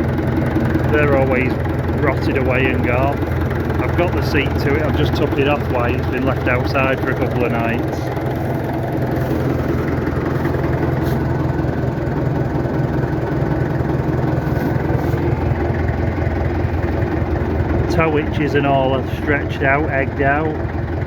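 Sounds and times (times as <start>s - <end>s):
diesel engine idling: 0.0s - 21.0s.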